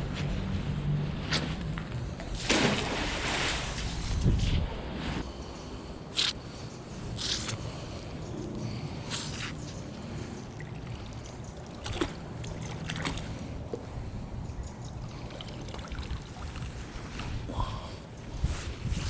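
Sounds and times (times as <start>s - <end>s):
wind rumble on microphone: 0.0s - 5.3s, 13.8s - 19.0s
water trickling and splashing: 2.2s - 4.2s, 10.0s - 13.6s, 15.0s - 17.5s.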